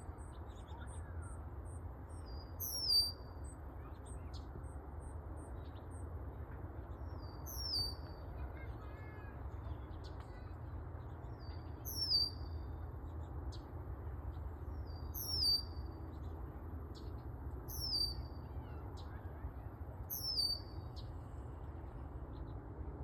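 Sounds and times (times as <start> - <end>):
steady low rumble: 3.3 - 23.0
bird whistling call: 17.7 - 18.3, 20.1 - 20.7.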